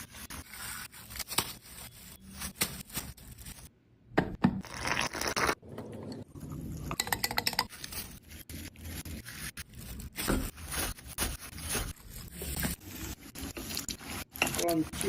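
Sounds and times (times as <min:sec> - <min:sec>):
utensils scraping and clinking: 0:11.8 - 0:15.0.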